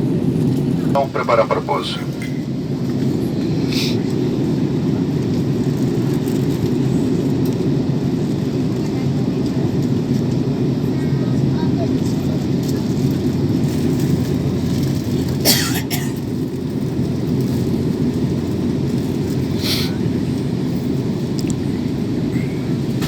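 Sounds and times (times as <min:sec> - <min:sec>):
aircraft cabin engine rumble: 0:00.0 - 0:23.0.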